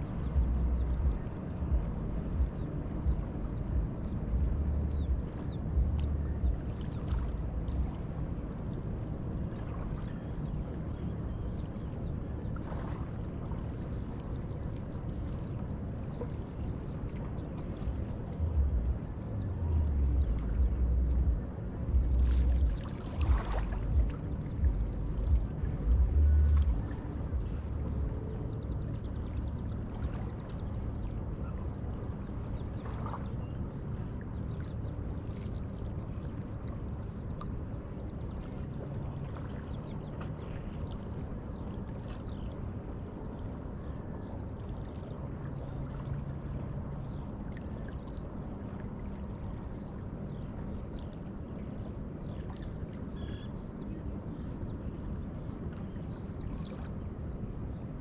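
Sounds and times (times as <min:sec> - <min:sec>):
boat engine hum: 0:00.0 - 0:58.0
river water lapping and splashing: 0:00.0 - 0:58.0
faint bird chirps: 0:52.2 - 0:54.8.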